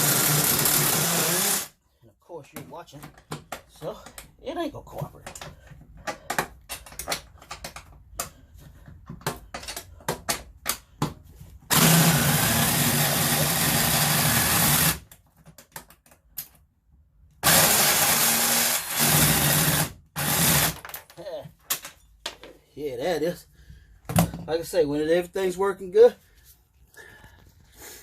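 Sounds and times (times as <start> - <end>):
impact drill hammering on bolt: 0.0 - 1.7, 11.7 - 15.1, 17.4 - 20.9.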